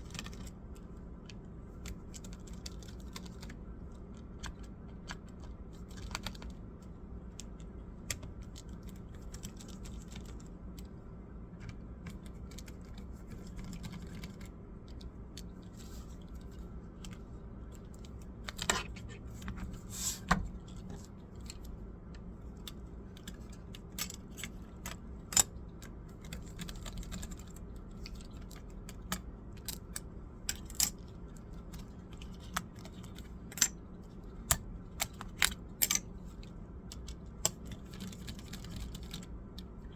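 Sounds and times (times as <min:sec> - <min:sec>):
steady low hum: 0:00.0 - 0:39.9.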